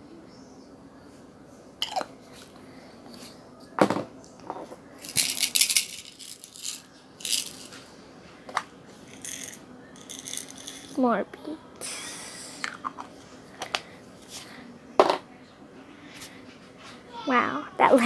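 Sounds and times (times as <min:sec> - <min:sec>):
small pieces rattling in a container: 0:05.0 - 0:07.7, 0:09.1 - 0:11.0.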